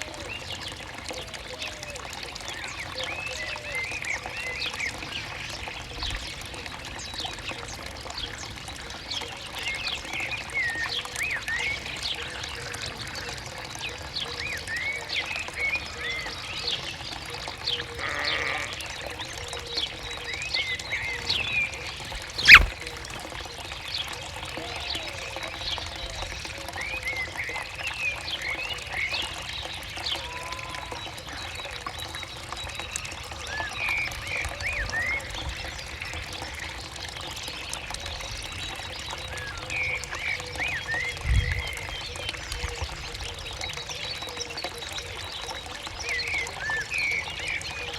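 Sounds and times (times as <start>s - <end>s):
small birds chirping: 20.9s - 22.8s.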